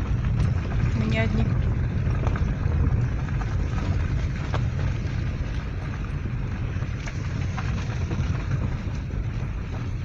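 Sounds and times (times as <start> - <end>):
car engine and tyres rumbling: 0.0 - 10.0.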